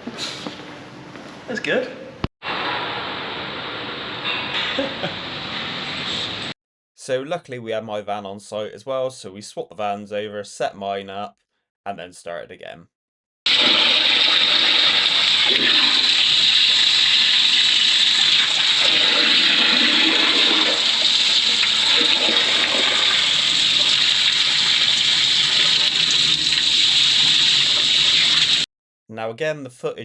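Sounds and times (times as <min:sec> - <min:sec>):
high-pressure water spray: 0:13.5 - 0:28.6.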